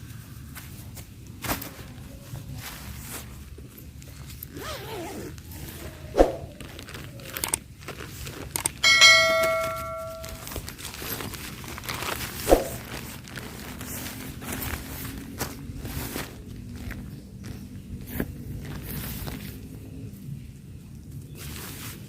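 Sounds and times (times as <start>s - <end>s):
footsteps: 6.2s - 6.6s, 12.4s - 12.9s
metal object ringing: 8.8s - 10.6s.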